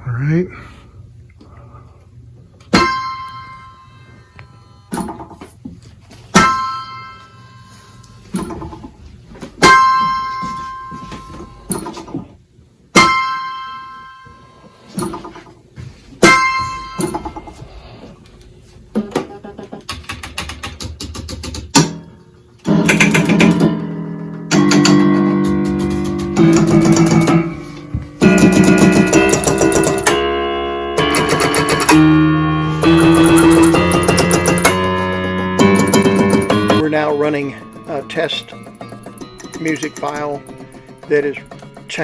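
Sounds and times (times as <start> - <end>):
electronic keyboard chords: 22.6 - 42.0.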